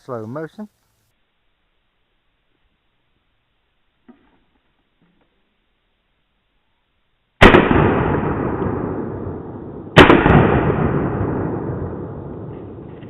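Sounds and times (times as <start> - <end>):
slowed shotgun blasts: 7.4 - 13.0.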